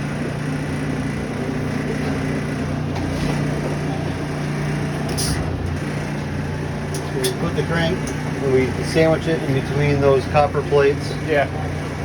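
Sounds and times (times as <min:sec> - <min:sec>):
constant low hum: 0:00.0 - 0:12.0
machine shop equipment droning: 0:00.0 - 0:12.0.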